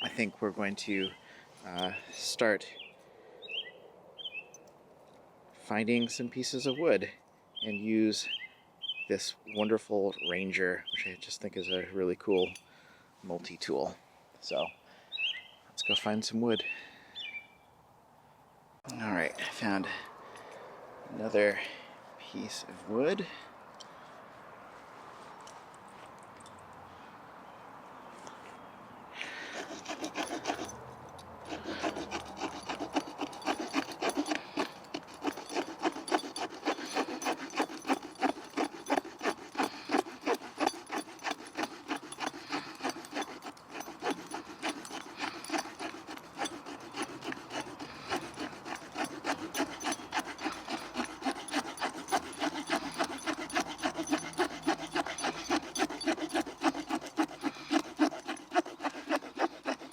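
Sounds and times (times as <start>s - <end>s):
saw cutting wood: 1.6s - 2.3s, 29.2s - 59.9s.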